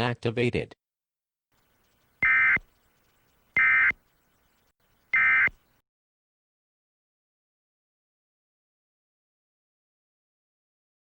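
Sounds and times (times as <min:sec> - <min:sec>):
electronic warbling data tones: 0:01.7 - 0:05.6.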